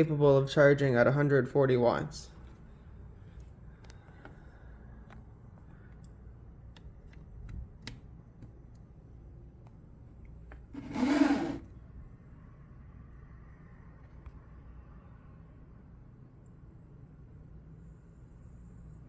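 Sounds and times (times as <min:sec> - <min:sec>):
small clicks and taps on desk: 0:05.0 - 0:08.9
loud scraping rub: 0:10.7 - 0:11.7.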